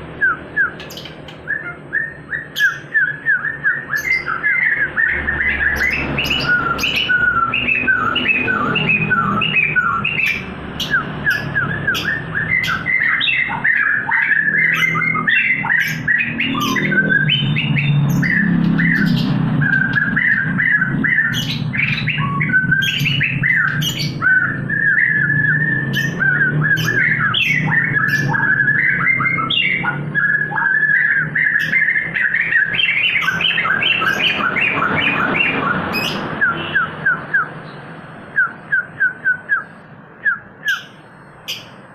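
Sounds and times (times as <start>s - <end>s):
songbird chirping and trilling: 0.0s - 41.9s.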